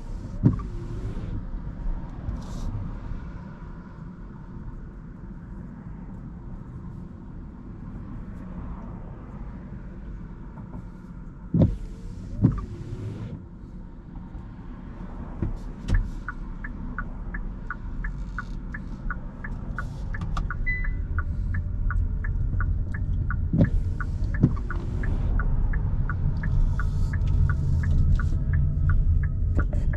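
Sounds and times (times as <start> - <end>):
windscreen wipers sweeping: 0.0 - 2.8, 10.5 - 13.8, 14.9 - 29.9
engine and tyre rumble: 0.0 - 29.9
steady ticking: 16.0 - 29.9.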